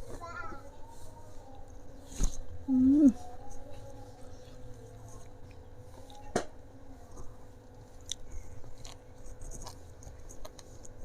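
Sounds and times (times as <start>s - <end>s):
faint steady hum: 0.0s - 11.0s
person chewing and crunching: 7.1s - 11.0s.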